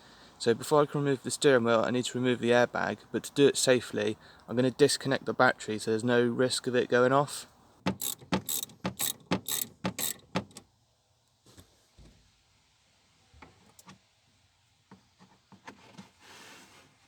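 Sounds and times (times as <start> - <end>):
ratchet wrench clicking: 7.9 - 10.2.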